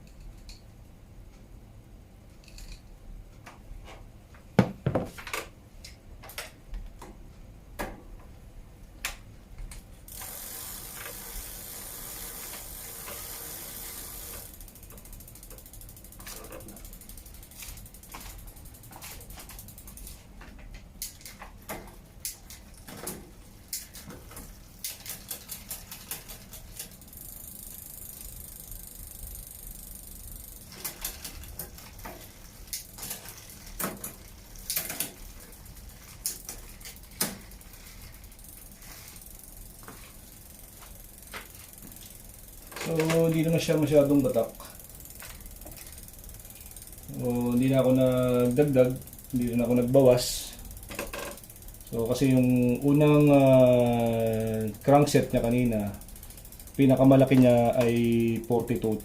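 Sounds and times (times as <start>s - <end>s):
clicks and knocks from bike parts: 3.4s - 5.6s, 50.8s - 51.5s
bicycle freewheel clicking: 10.1s - 59.0s.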